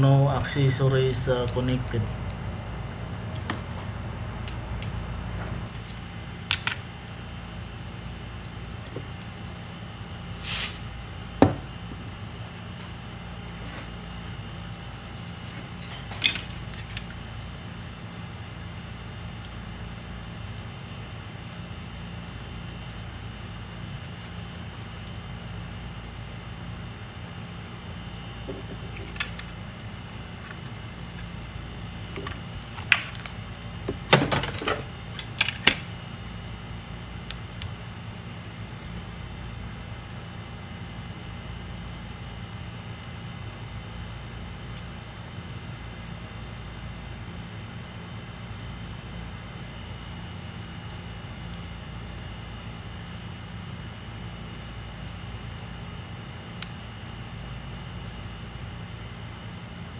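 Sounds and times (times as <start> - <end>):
steady low hum: 0.0 - 8.8
low mechanical hum: 0.0 - 59.9.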